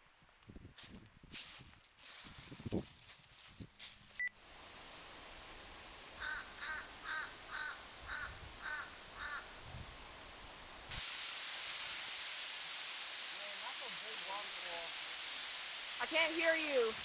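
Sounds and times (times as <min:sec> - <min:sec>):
footsteps on a trail: 0:00.8 - 0:04.2
faint hiss: 0:00.8 - 0:17.0
bird harsh calls: 0:06.2 - 0:09.5.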